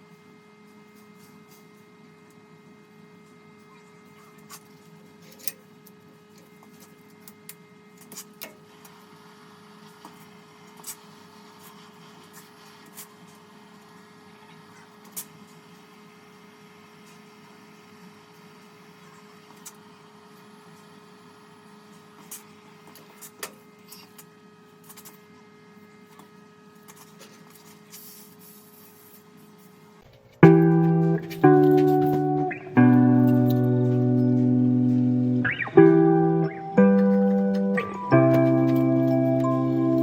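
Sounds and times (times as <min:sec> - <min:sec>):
steady low hum: 0:09.2 - 0:40.0
guitar music: 0:30.4 - 0:40.0.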